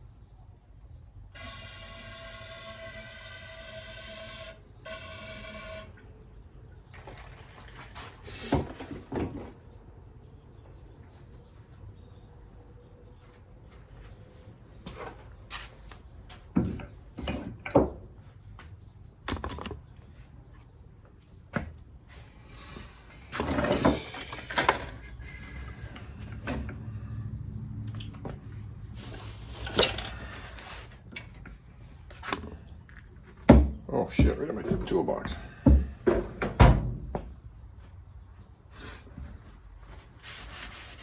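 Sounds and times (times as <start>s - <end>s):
tools knocking and clattering: 19.3s - 19.9s.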